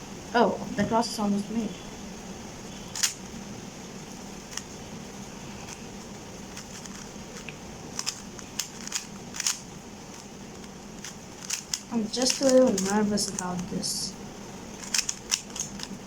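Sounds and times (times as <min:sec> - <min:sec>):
steady low hum: 0:00.0 - 0:16.0
puzzle cube clicking: 0:02.9 - 0:03.3, 0:04.5 - 0:04.7, 0:06.5 - 0:13.7, 0:14.8 - 0:16.0.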